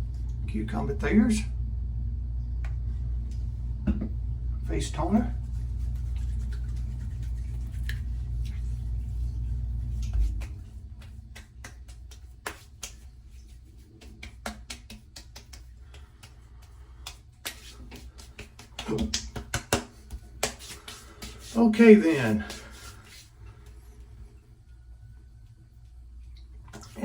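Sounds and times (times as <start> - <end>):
low hum: 0.0 - 12.5.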